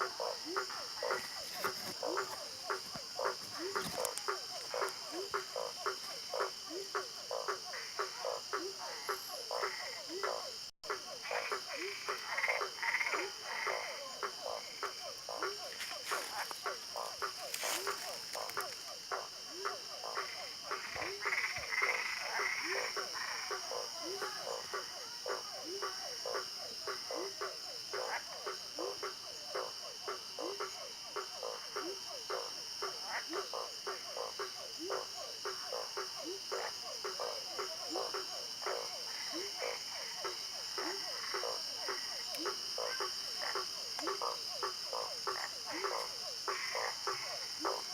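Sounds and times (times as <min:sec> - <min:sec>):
frogs croaking: 0:00.0 - 0:47.9.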